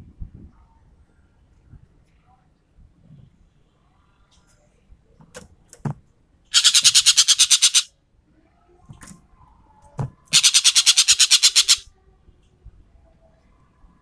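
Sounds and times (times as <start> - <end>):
bird rattling call: 6.5 - 7.9, 10.3 - 11.8.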